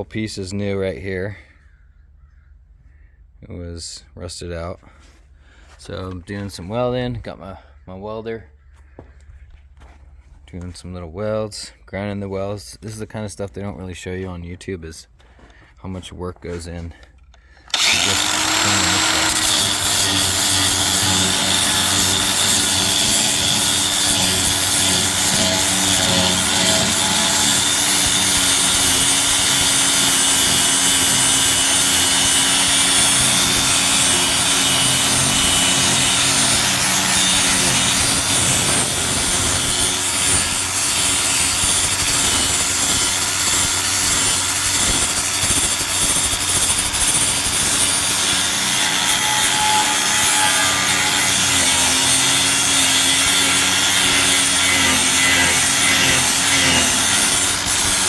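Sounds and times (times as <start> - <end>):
angle grinder grinding steel: 17.7 - 58.0.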